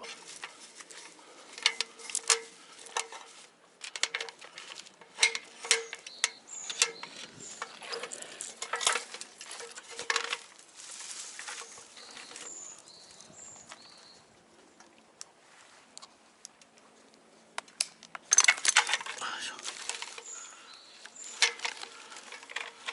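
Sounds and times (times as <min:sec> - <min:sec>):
metal rope hardware clicking: 0:00.0 - 0:10.6, 0:17.7 - 0:22.9
rustling: 0:00.0 - 0:22.9
bird chirps: 0:05.7 - 0:08.0, 0:11.6 - 0:14.3, 0:20.2 - 0:21.4.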